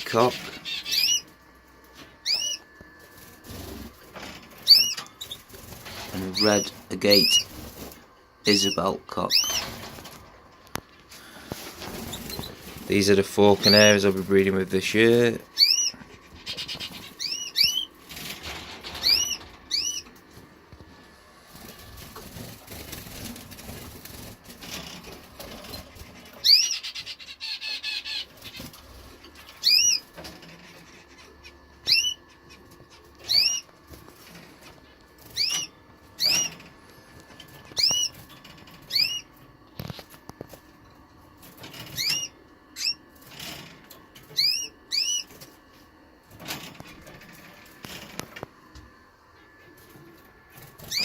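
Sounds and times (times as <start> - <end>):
canary trilling and chirping: 0.0 - 1.4, 2.0 - 10.3, 11.6 - 14.6, 15.5 - 20.2, 21.5 - 36.7, 37.3 - 40.0, 41.4 - 45.5, 50.6 - 51.0.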